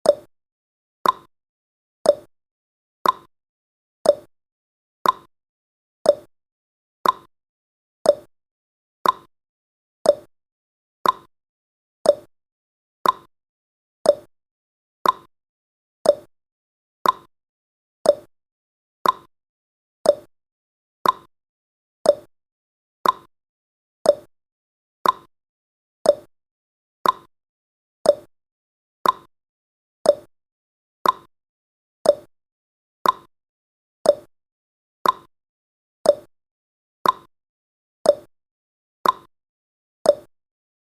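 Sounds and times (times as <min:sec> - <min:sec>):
clock tick-tock: 0:00.0 - 0:00.3, 0:01.0 - 0:01.3, 0:02.0 - 0:02.3, 0:03.0 - 0:03.3, 0:04.0 - 0:04.3, 0:05.0 - 0:05.3, 0:06.0 - 0:06.3, 0:07.0 - 0:07.3, 0:08.0 - 0:08.3, 0:09.0 - 0:09.3, 0:10.0 - 0:10.3, 0:11.0 - 0:11.3, 0:12.0 - 0:12.3, 0:13.0 - 0:13.3, 0:14.0 - 0:14.3, 0:15.0 - 0:15.3, 0:16.0 - 0:16.3, 0:17.0 - 0:17.3, 0:18.0 - 0:18.3, 0:19.0 - 0:19.3, 0:20.0 - 0:20.3, 0:21.0 - 0:21.3, 0:22.0 - 0:22.3, 0:23.0 - 0:23.3, 0:24.0 - 0:24.3, 0:25.0 - 0:25.3, 0:26.0 - 0:26.3, 0:27.0 - 0:27.3, 0:28.0 - 0:28.3, 0:29.0 - 0:29.3, 0:30.0 - 0:30.3, 0:31.0 - 0:31.3, 0:32.0 - 0:32.3, 0:33.0 - 0:33.3, 0:34.0 - 0:34.3, 0:35.0 - 0:35.3, 0:36.0 - 0:36.3, 0:37.0 - 0:37.3, 0:38.0 - 0:38.3, 0:39.0 - 0:39.3, 0:40.0 - 0:40.4.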